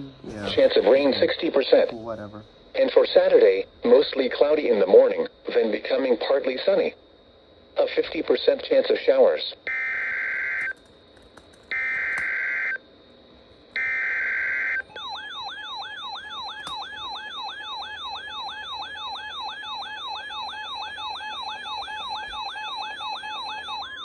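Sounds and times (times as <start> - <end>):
warbling alert siren: 9.7 - 10.8, 11.7 - 12.8, 13.8 - 24.0.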